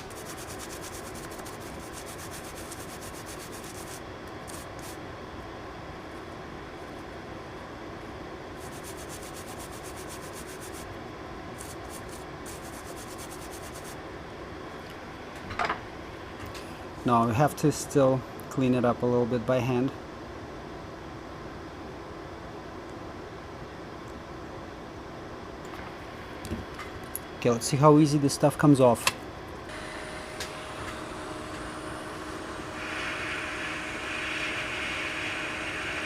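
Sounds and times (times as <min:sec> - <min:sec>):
brush scrubbing circuit board: 0:00.0 - 0:05.0, 0:08.6 - 0:10.9, 0:11.6 - 0:14.0
machinery hum and hiss: 0:00.0 - 0:36.0.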